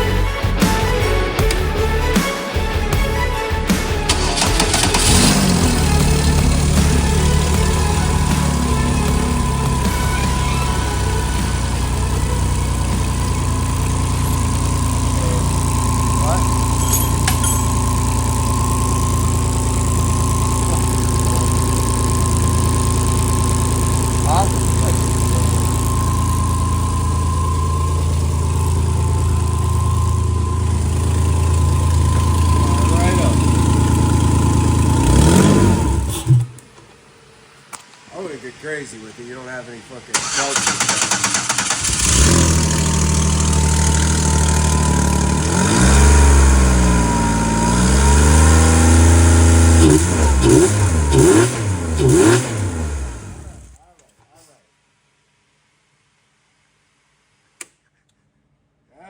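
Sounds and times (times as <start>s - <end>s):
engine idling: 0.0s - 37.6s, 39.6s - 53.8s
exhaust leak: 4.1s - 39.2s, 40.0s - 53.8s
thin steady whine: 5.9s - 35.0s.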